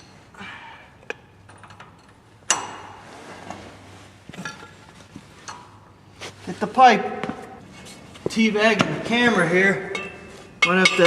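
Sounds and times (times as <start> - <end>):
metal tools clinking on bolt: 9.3 - 11.0
ringing metallic clank: 9.8 - 11.0.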